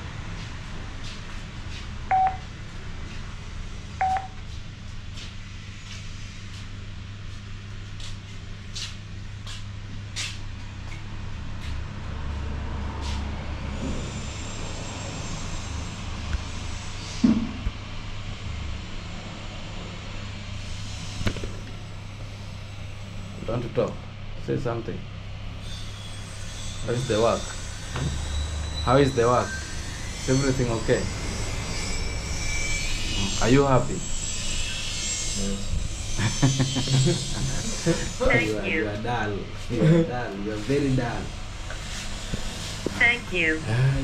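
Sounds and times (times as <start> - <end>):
low electrical hum: 0.0 - 12.6, 16.0 - 44.0
intercom handset beeps: 2.1 - 2.4, 4.0 - 4.4.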